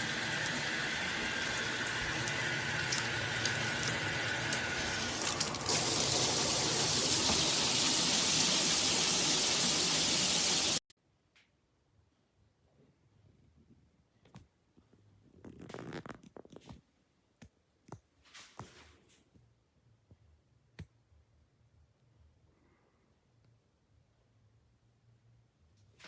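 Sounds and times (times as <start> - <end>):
shower water spraying: 0.0 - 10.8.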